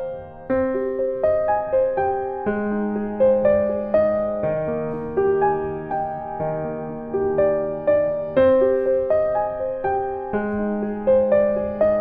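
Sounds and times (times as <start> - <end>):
soft piano music: 0.0 - 12.0.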